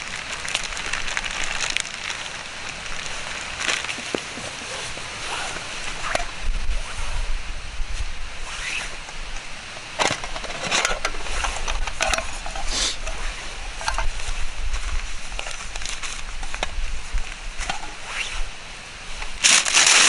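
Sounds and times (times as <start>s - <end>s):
campfire crackling and popping: 0.0s - 6.4s.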